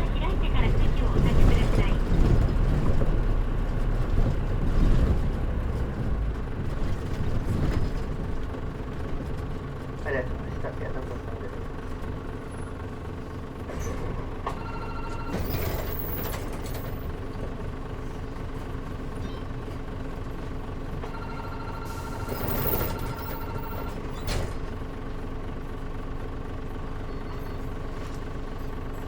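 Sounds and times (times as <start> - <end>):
bus engine idling: 0.0 - 29.0
short electronic beeps: 21.1 - 24.2.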